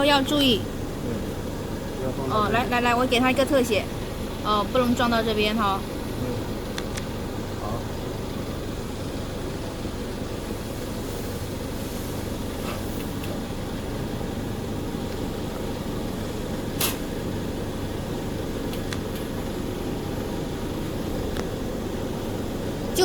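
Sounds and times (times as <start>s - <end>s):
factory machinery hum: 0.0s - 23.0s
sharp click: 16.8s - 17.0s.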